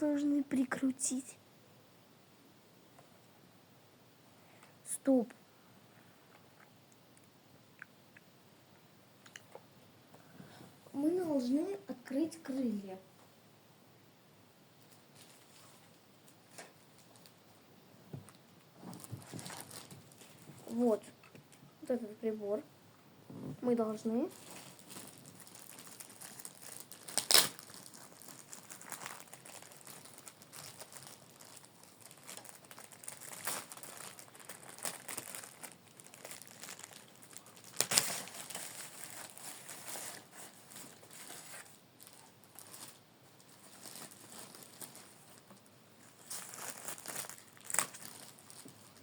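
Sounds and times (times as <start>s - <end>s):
plastic packaging crinkling: 18.2s - 21.0s, 24.0s - 49.0s.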